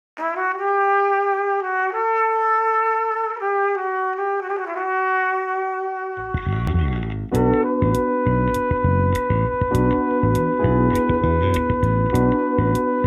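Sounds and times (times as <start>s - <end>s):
slow solo melody: 6.2s - 13.0s
full band with bass: 6.3s - 12.8s.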